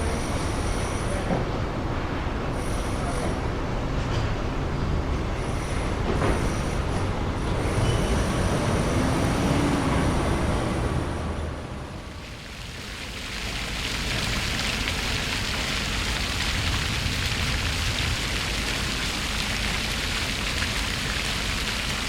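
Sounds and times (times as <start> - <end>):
large vehicle rumbling: 0.0 - 12.8.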